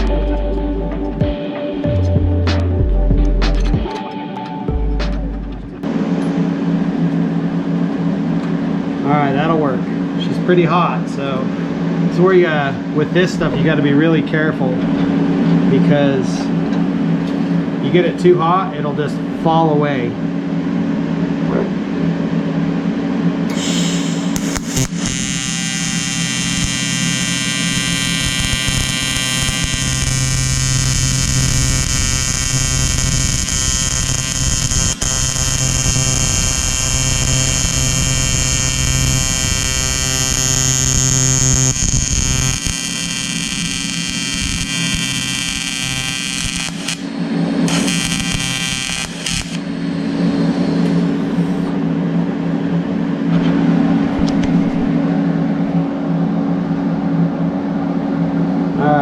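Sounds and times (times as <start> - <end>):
welder low hum: 0.0 - 3.9, 4.7 - 58.8
welding arc buzzing: 23.5 - 51.8.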